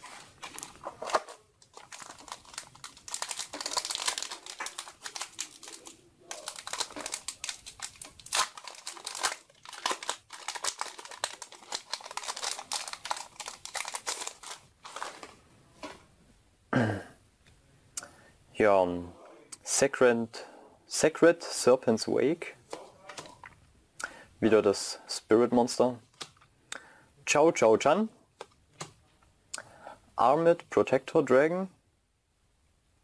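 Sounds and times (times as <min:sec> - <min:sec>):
foil wrapper crinkling: 0:00.0 - 0:15.4.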